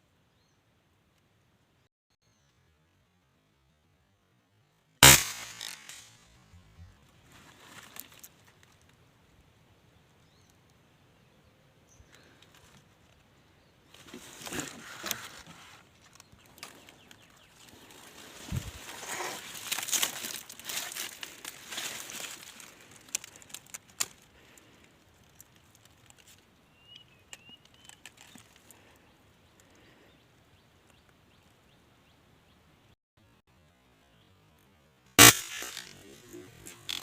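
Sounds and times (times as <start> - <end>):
rustling: 5.0 - 9.0, 13.9 - 26.5.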